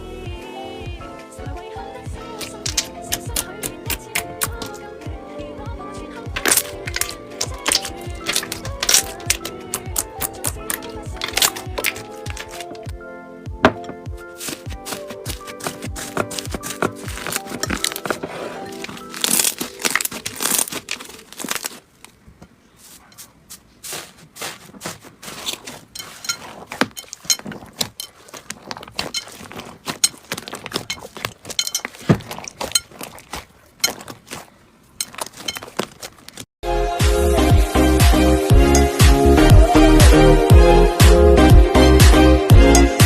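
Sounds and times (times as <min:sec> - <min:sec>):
music: 0:00.0 - 0:20.1, 0:36.6 - 0:43.0
slime crackling and popping: 0:02.4 - 0:04.8, 0:06.4 - 0:12.9, 0:14.4 - 0:22.2, 0:24.8 - 0:36.5.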